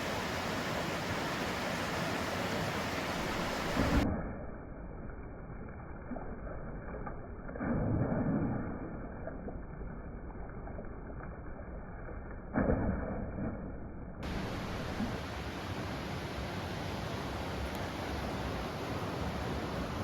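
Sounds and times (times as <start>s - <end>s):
river water rushing: 0.0s - 4.0s, 14.2s - 20.0s
low rumbling bumps: 3.2s - 4.5s.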